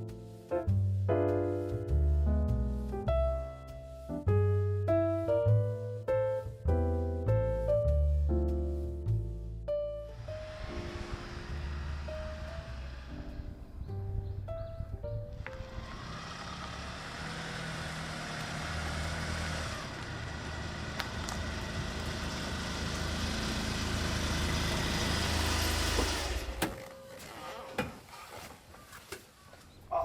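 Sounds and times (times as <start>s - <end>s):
vehicle engine running: 10.1s - 26.8s.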